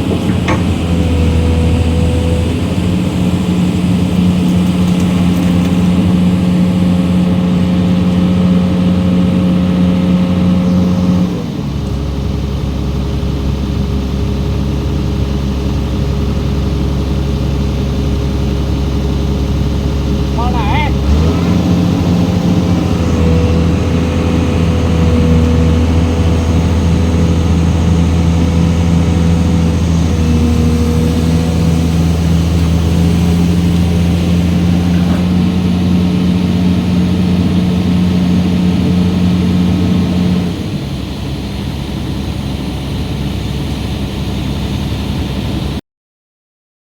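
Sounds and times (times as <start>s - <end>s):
diesel engine running: 0.0s - 45.8s
thin steady whine: 15.9s - 45.6s.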